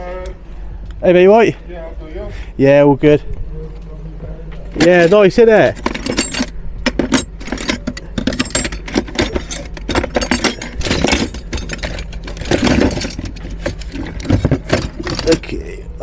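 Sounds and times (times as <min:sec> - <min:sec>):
metal tools clinking: 0:04.6 - 0:15.6.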